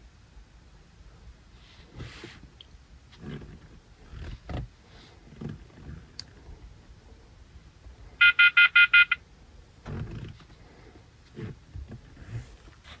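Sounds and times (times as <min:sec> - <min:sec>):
short electronic beeps: 0:08.2 - 0:09.2.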